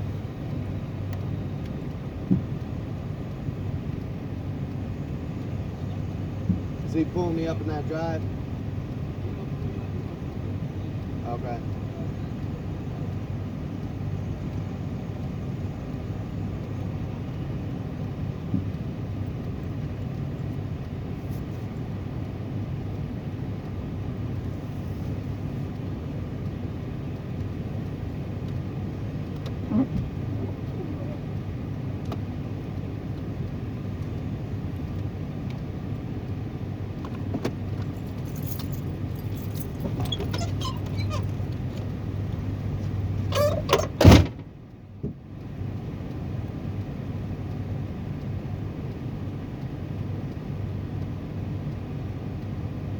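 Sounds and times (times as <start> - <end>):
car engine rumbling: 0.0 - 52.9
light jingling: 37.6 - 44.0.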